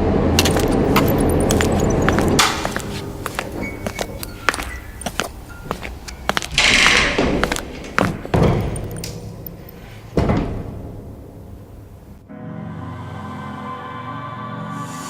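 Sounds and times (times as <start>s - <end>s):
dark droning music: 0.0s - 15.0s
clattering knocks: 0.4s - 11.4s
heavy thuds: 0.4s - 12.0s.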